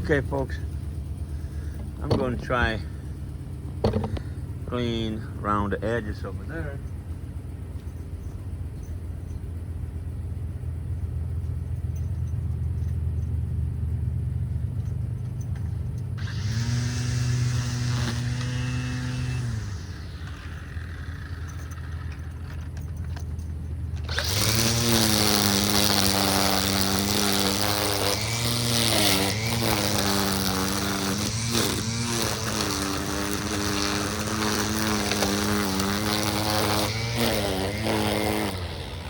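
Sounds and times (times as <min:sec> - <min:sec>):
string trimmer running: 0:00.0 - 0:07.2, 0:15.5 - 0:39.0.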